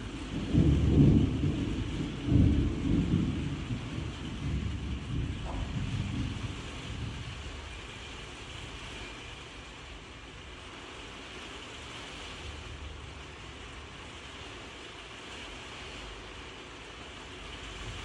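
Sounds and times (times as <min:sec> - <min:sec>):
thunder rumble: 0:00.0 - 0:09.8
steady rainfall: 0:00.0 - 0:18.0.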